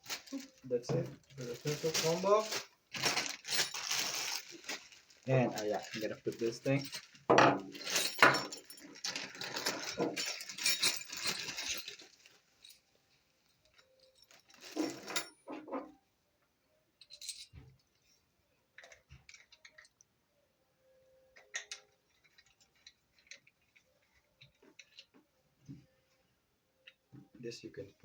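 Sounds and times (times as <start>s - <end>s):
packaging rustling and clattering: 0.0s - 15.8s.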